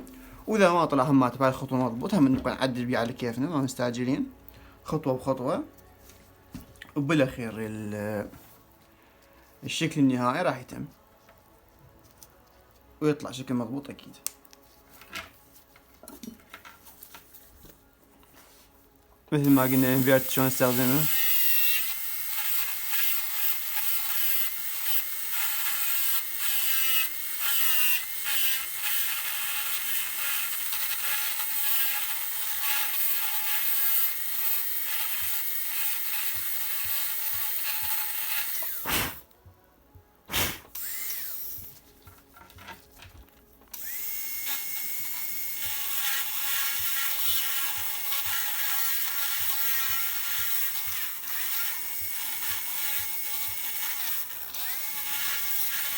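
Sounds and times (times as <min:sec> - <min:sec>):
dental drill whining: 0:19.4 - 0:39.2, 0:40.7 - 0:41.7, 0:43.7 - 0:55.9.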